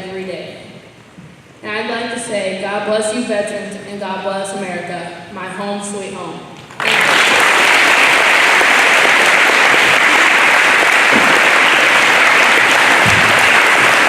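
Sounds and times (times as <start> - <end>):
audience applauding loudly: 6.7 - 14.0.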